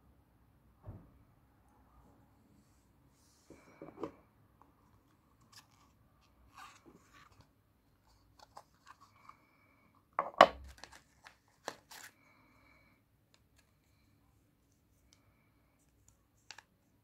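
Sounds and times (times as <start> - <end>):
packaging crinkling and tearing: 10.6 - 12.2
packaging rustling and clicking: 10.6 - 12.2.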